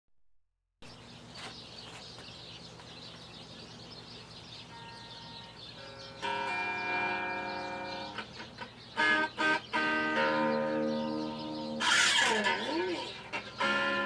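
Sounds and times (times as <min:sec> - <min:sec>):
birds chirping: 0:00.8 - 0:14.0
guitar notes ringing: 0:04.7 - 0:14.0
guitar chord strummed loudly: 0:05.0 - 0:08.3, 0:09.0 - 0:14.0.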